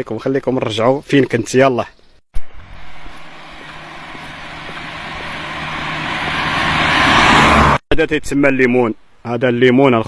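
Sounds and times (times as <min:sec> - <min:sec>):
vehicle approaching: 0:02.4 - 0:07.8.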